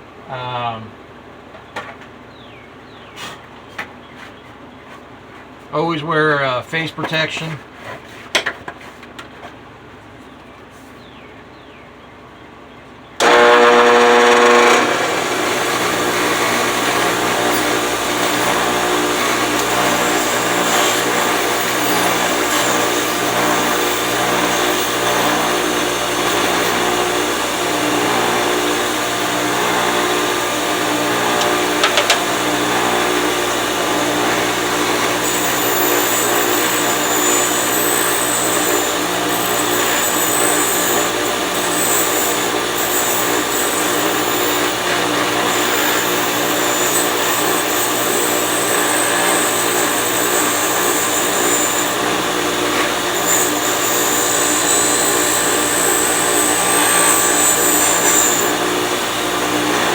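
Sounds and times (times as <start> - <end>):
bench grinder running: 13.2 - 59.9
metal grinding on wheel: 13.2 - 59.9.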